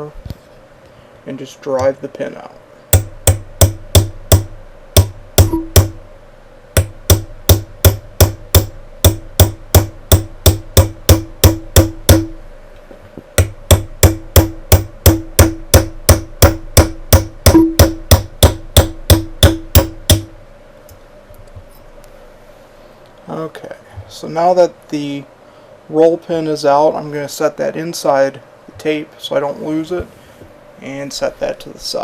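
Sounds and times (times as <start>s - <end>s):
hammer tapping metal punch: 2.9s - 6.0s, 6.8s - 12.4s, 13.2s - 20.4s.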